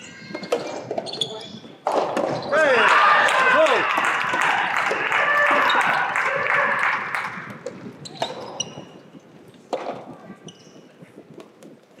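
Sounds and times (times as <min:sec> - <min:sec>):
short high squeaks: 0:00.0 - 0:01.7
rushing crowd-like noise: 0:01.8 - 0:08.6.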